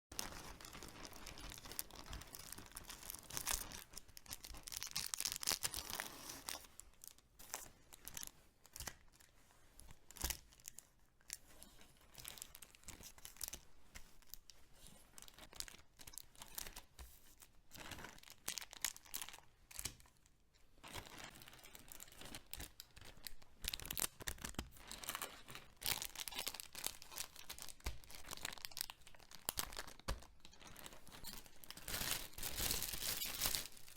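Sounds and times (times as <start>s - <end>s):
packaging tearing and crinkling: 23.7s - 33.9s.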